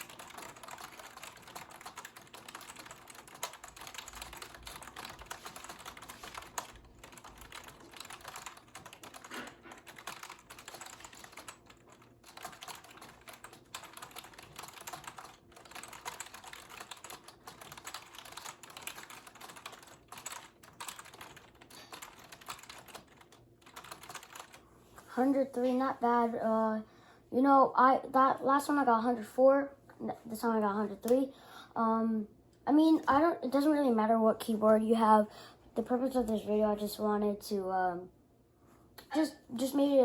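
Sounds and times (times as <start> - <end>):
fast typing on keyboard: 0.0 - 24.6.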